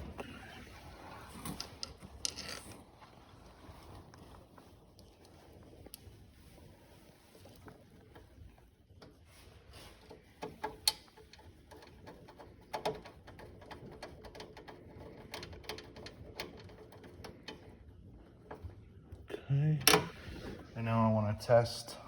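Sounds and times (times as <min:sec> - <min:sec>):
metal parts clicking: 0:01.5 - 0:02.8.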